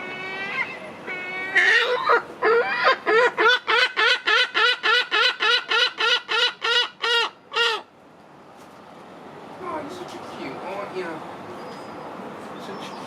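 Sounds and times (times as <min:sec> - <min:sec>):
gull calling: 0:00.0 - 0:07.9.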